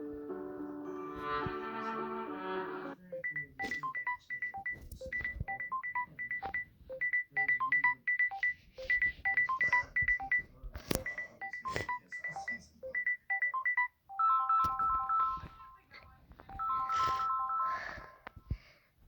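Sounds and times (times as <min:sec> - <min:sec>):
electronic ringtone melody: 0:03.1 - 0:10.4, 0:11.1 - 0:15.5, 0:16.6 - 0:18.1.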